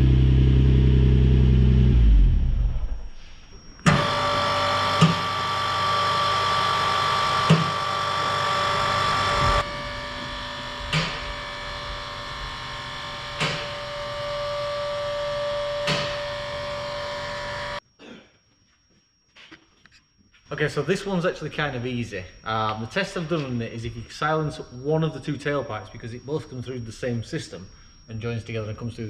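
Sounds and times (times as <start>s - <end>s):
car engine idling: 0.0s - 3.0s.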